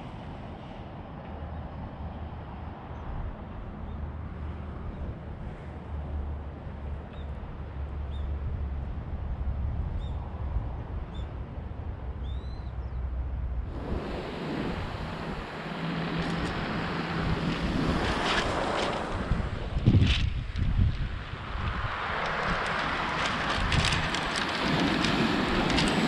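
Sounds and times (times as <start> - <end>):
steady low hum: 12.9 - 21.5
rushing wind or surf: 13.6 - 26.0.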